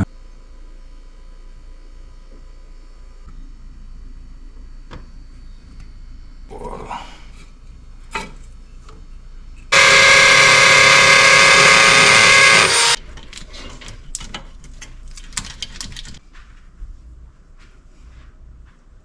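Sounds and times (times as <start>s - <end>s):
power tool running: 9.7s - 13.0s.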